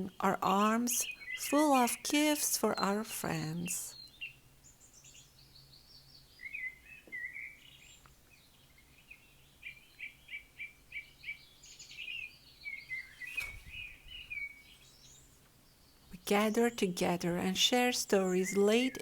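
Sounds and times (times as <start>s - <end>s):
birds chirping: 0.0s - 19.0s
rustle: 3.9s - 16.1s.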